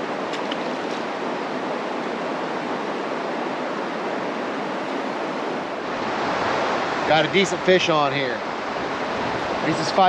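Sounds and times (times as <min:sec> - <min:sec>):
waterfall and rushing river: 0:00.0 - 0:10.0.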